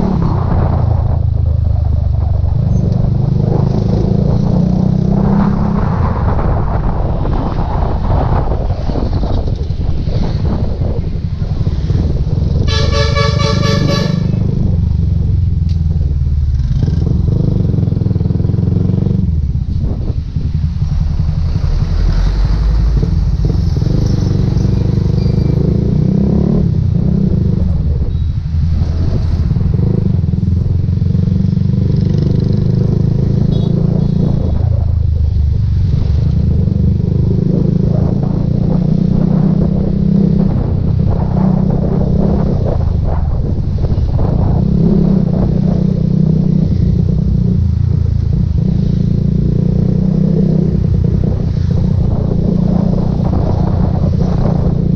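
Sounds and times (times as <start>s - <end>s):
wind on microphone: 0.0s - 54.9s
motorcycle engine: 9.5s - 42.7s
vehicle horn honking: 12.6s - 14.5s, 33.5s - 34.2s.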